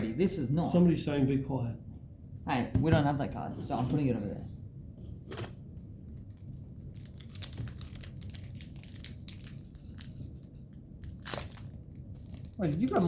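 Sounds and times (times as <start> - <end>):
foil wrappers crinkling: 6.1 - 13.0.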